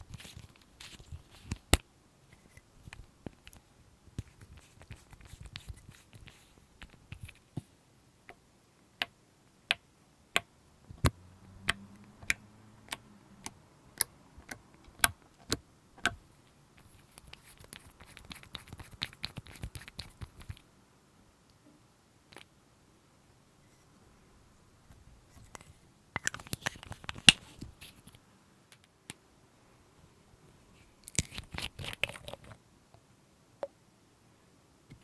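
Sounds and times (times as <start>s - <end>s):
clicks of small objects handled: 25.4s - 29.2s, 31.0s - 32.6s.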